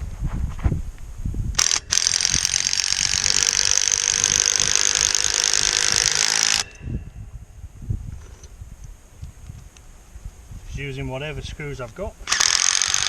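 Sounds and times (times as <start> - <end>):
cordless driver driving a screw: 1.6 - 6.8, 12.2 - 13.0.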